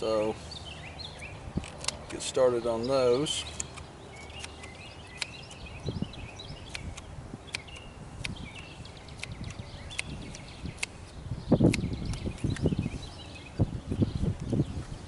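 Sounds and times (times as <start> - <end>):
birds chirping: 0.0 - 15.0
wind buffeting microphone: 0.8 - 3.5, 4.2 - 15.0
shears snipping rubber: 1.6 - 5.7, 6.6 - 8.4, 9.1 - 12.7.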